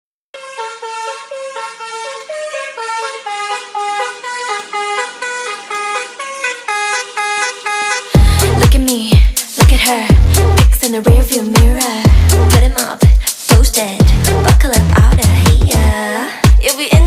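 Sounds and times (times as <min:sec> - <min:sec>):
musical car horn tune: 0:00.4 - 0:08.6
dance beat with bass drum: 0:03.3 - 0:17.0.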